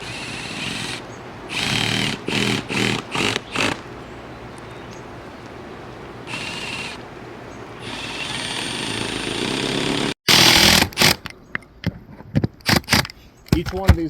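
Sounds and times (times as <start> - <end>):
cordless power driver running: 6.3 - 7.0, 7.8 - 11.2.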